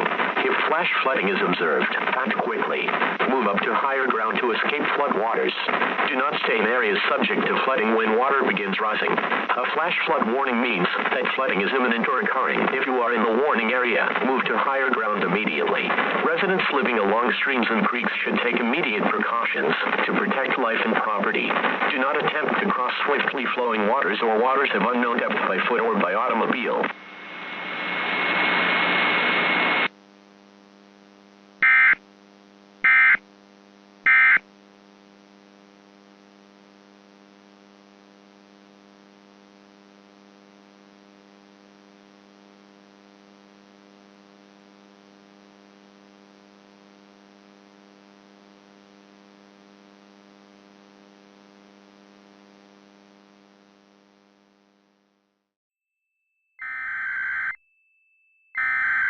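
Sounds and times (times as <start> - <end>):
alert data bursts: 34.1 - 34.4.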